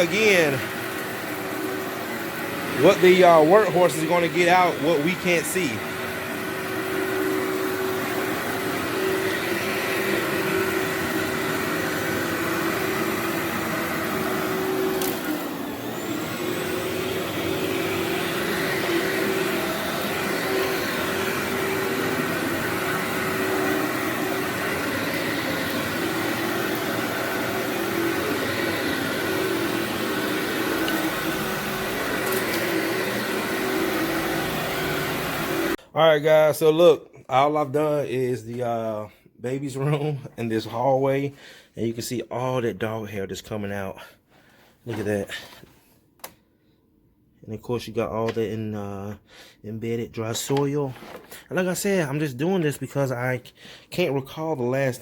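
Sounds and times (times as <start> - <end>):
vacuum cleaner running on carpet: 0.0 - 35.8.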